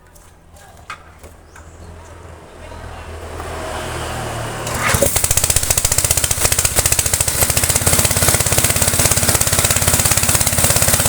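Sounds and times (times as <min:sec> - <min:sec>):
pressure pump pulsing: 0:04.6 - 0:11.0.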